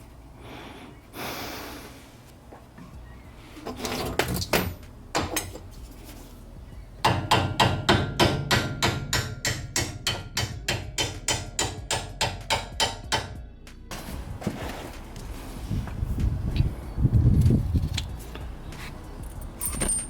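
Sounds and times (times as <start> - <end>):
metal tools clanking: 3.6 - 6.2, 17.9 - 20.0.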